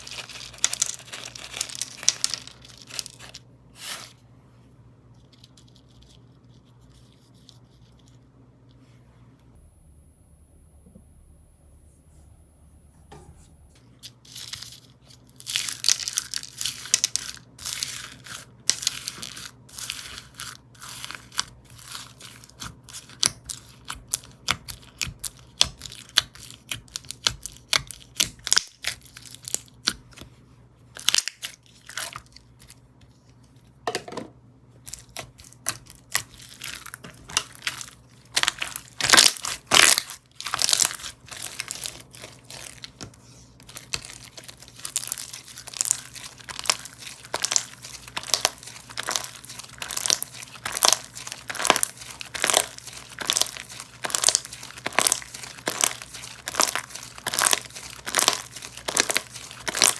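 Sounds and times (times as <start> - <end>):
slime crackling and crunching: 0.0 - 4.1, 14.0 - 30.2, 30.9 - 32.8, 34.8 - 59.9.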